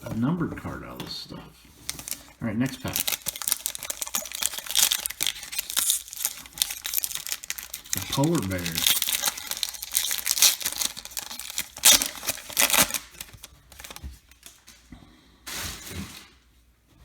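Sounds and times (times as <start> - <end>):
cards rustling: 1.8 - 14.6
foil wrapper crinkling: 1.8 - 14.7.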